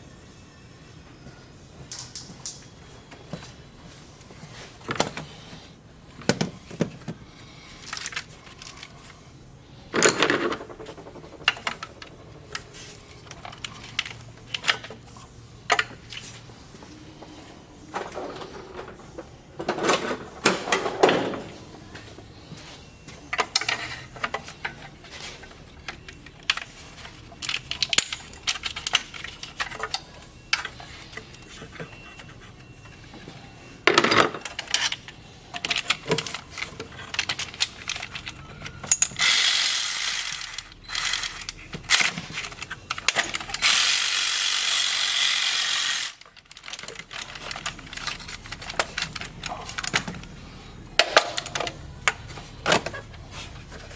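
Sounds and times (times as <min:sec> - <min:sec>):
ratcheting: 0:43.3 - 0:46.8.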